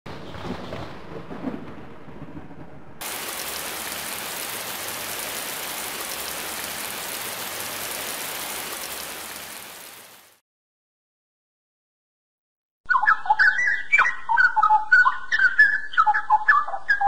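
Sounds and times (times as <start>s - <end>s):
heavy rain hissing: 3.0s - 10.4s.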